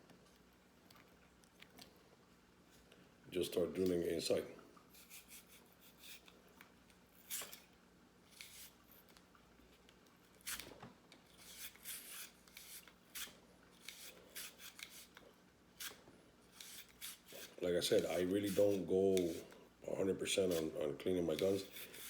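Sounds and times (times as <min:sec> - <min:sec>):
wire brush scrubbing: 0:15.8 - 0:19.6, 0:20.4 - 0:22.0.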